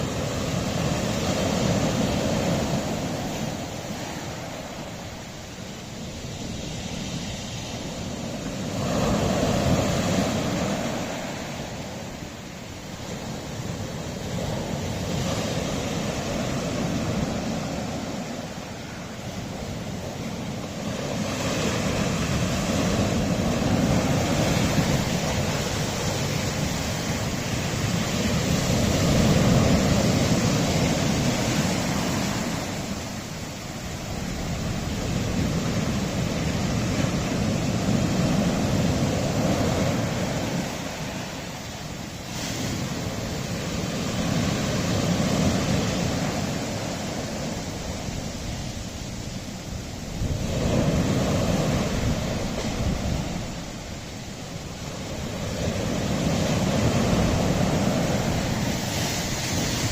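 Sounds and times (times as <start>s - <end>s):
surf on rocky shore: 0.0s - 59.9s.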